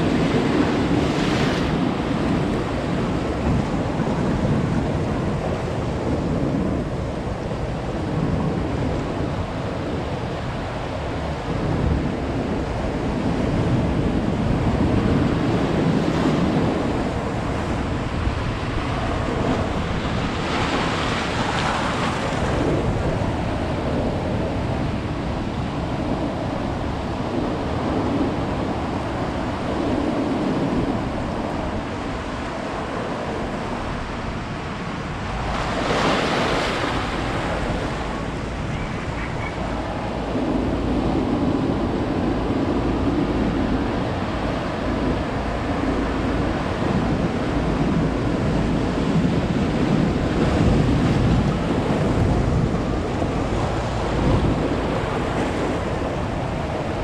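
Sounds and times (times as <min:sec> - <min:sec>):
ocean waves rushing: 0:00.0 - 0:57.0
waves breaking: 0:00.0 - 0:57.0.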